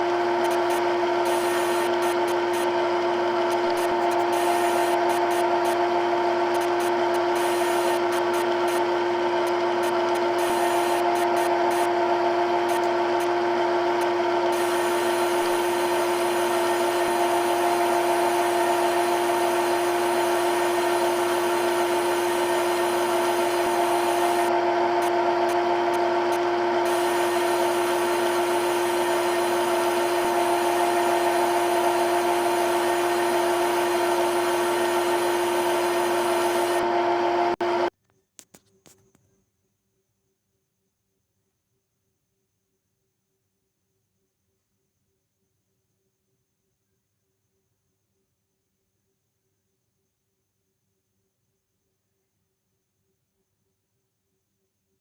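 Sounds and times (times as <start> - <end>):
hiss of cutting: 0.0 - 2.7, 6.5 - 12.0, 12.6 - 37.6
cnc machine whining: 0.0 - 37.9.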